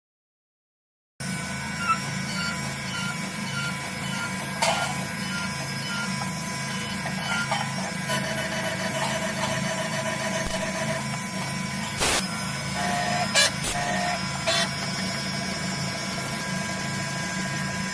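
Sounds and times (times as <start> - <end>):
machine hum with whining tones: 1.2 - 17.9
short burst of noise: 12.0 - 12.3.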